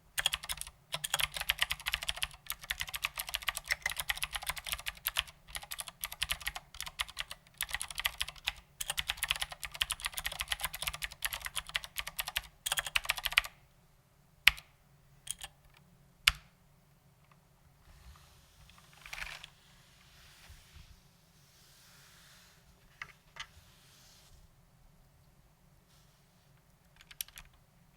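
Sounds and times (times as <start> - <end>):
typing on mechanical keyboard: 0.2 - 13.5, 15.3 - 15.6, 27.0 - 27.6.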